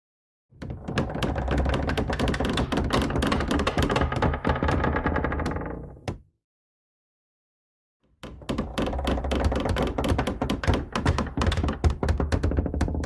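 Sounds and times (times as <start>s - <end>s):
rapid irregular clicks and knocks: 0.9s - 5.1s, 8.2s - 13.0s.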